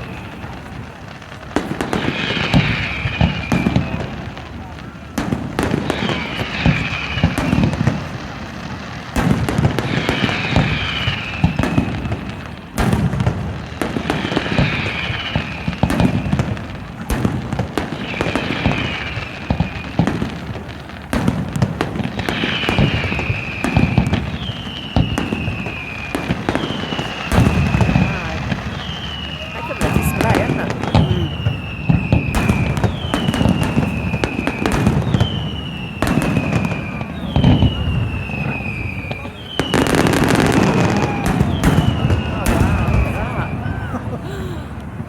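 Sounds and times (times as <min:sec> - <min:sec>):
falling whistle of fireworks: 0:00.0 - 0:45.0
fireworks banging and crackling: 0:00.0 - 0:45.0.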